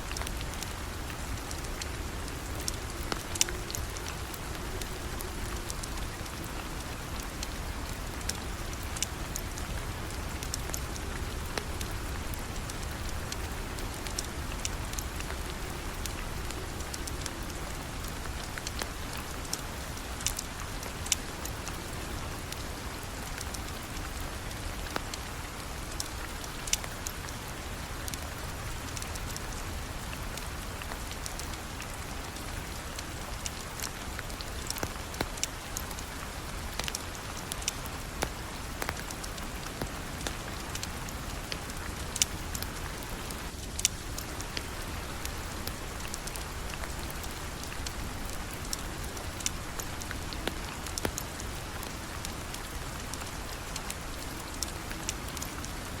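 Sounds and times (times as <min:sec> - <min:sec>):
steady rain hiss: 0:00.0 - 0:56.0.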